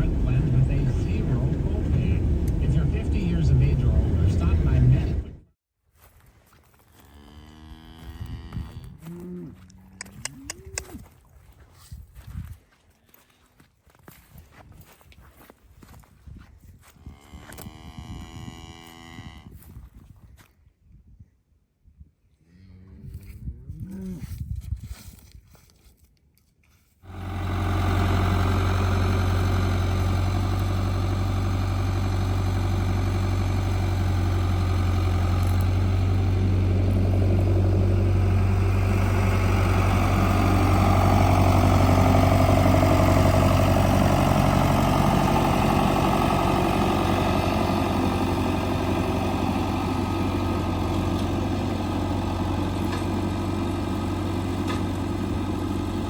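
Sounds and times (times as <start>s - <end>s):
engine running with deep hum: 0.0s - 5.5s, 17.0s - 19.5s, 27.1s - 56.0s.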